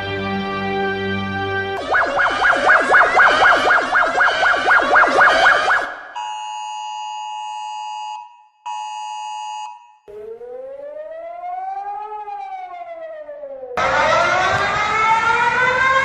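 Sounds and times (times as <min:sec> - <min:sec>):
two-tone alert signal: 0:01.8 - 0:06.3
siren wail: 0:01.8 - 0:06.8, 0:10.1 - 0:16.0.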